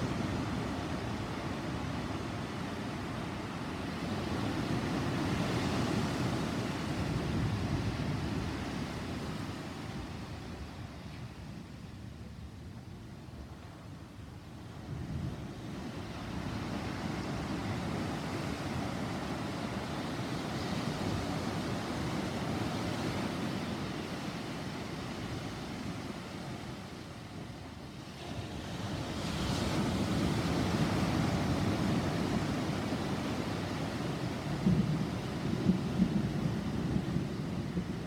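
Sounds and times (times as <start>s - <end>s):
wind and rain: 0.0s - 38.0s
low thunder rumble: 34.4s - 38.0s.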